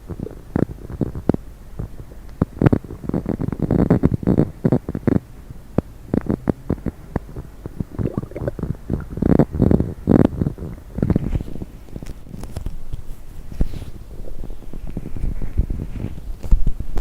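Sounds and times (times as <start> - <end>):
stomach gurgling: 0.0 - 1.2, 7.8 - 9.8.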